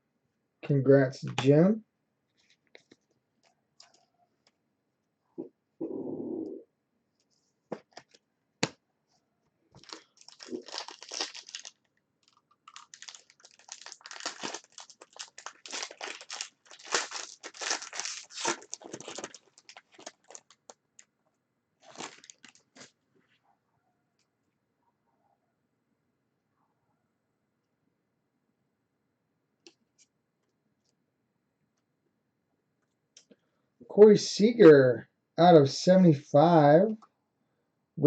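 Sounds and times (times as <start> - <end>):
card wrappers tearing and crinkling: 9.8 - 20.7, 21.8 - 22.9.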